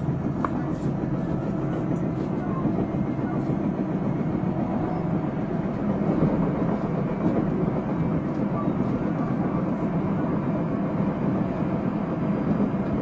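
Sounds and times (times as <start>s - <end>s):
train running on track: 0.0s - 13.0s.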